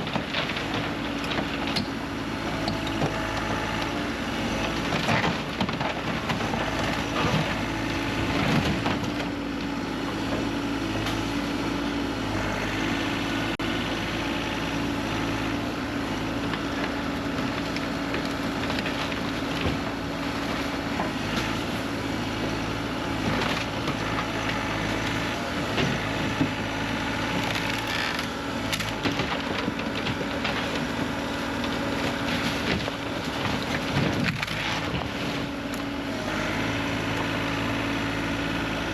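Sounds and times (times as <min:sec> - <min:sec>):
wood cracking and splintering: 0:00.0 - 0:02.0, 0:02.7 - 0:09.8, 0:16.4 - 0:37.4
heavy machine engine running: 0:00.0 - 0:38.9.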